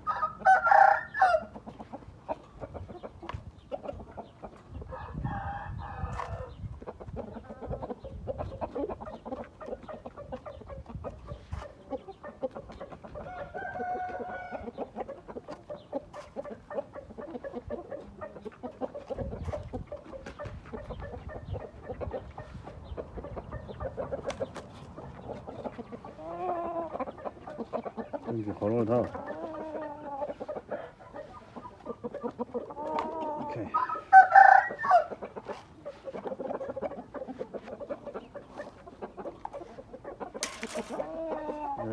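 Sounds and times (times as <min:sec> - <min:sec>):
roosters crowing: 0:00.0 - 0:01.8, 0:04.8 - 0:06.7, 0:13.0 - 0:15.2, 0:23.3 - 0:41.9
chickens clucking: 0:00.0 - 0:41.9.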